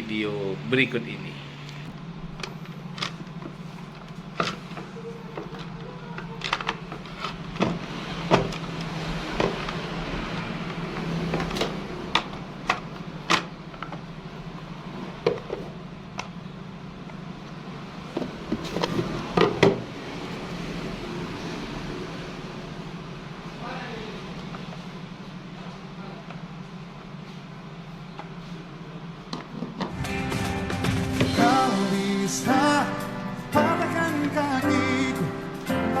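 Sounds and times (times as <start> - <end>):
steady low hum: 0.0 - 8.8.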